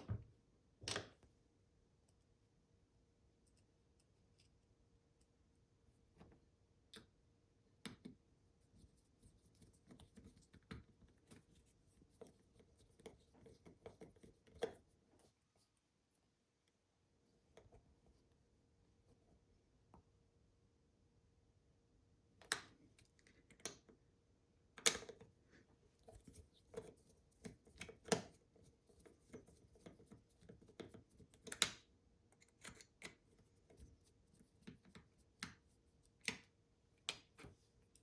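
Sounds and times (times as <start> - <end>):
small plastic clicks and taps: 7.8 - 8.2, 24.8 - 25.3, 26.1 - 28.4, 29.2 - 33.4, 36.2 - 38.0.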